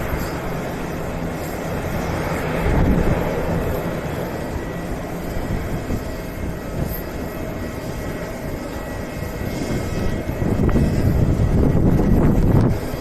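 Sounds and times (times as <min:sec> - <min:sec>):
airplane engines rumbling: 0:00.0 - 0:13.0.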